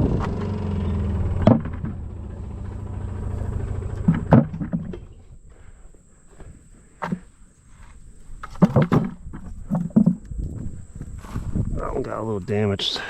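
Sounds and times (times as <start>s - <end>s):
tractor engine running: 0.0s - 5.6s.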